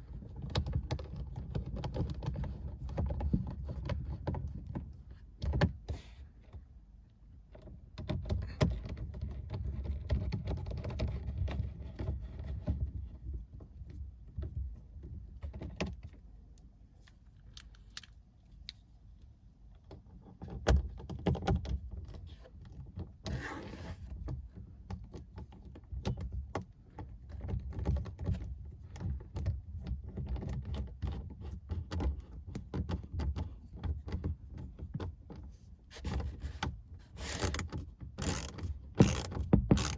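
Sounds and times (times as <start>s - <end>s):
rustling of plastic and wiring: 0.0s - 5.8s, 7.5s - 23.3s, 23.9s - 39.9s
clicks and knocks of plastic parts: 0.0s - 6.8s, 7.4s - 23.3s, 24.0s - 39.9s.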